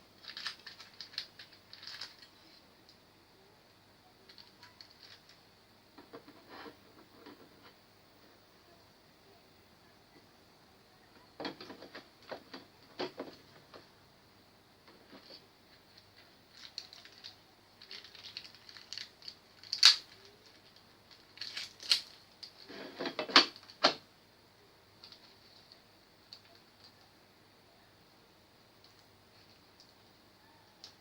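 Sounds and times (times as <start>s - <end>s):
small hard parts clattering: 0.2s - 2.5s, 14.9s - 23.9s.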